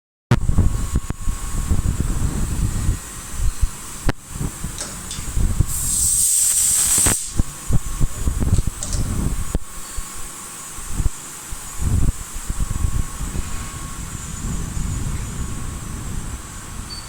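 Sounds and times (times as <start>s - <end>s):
machine high-pitched whine: 0.3s - 17.0s
loud hiss: 0.4s - 17.0s.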